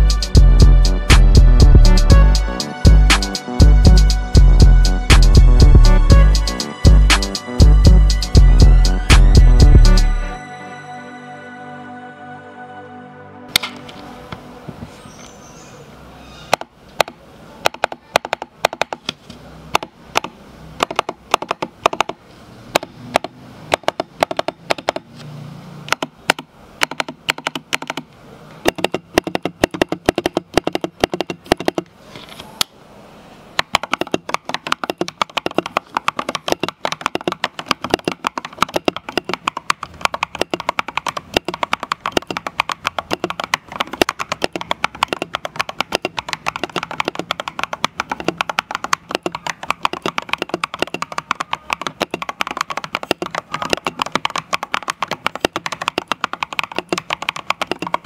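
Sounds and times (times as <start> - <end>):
mechanical keyboard typing: 19.7 - 22.2, 22.8 - 25.1, 25.9 - 31.9, 33.6 - 58.0.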